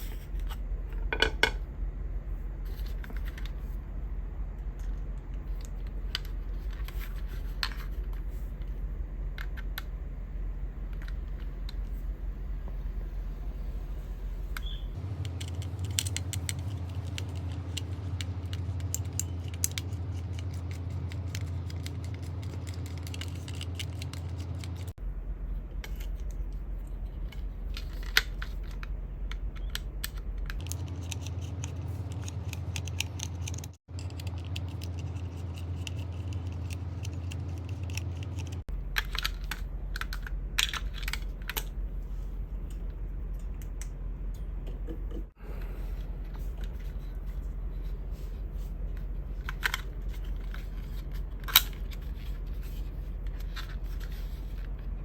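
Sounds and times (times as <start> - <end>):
steady low hum: 0.0 - 55.0.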